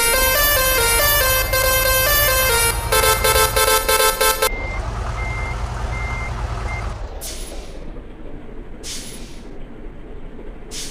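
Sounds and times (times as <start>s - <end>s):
multi-tone bus horn: 0.0s - 4.6s
reversing beeper: 0.0s - 7.0s
engine running: 0.0s - 10.9s.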